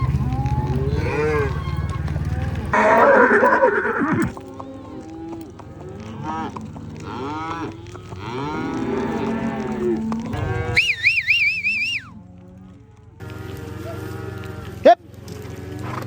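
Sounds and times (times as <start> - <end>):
cattle mooing and bawling: 0.0 - 16.0
high warbling whistle: 10.6 - 12.1.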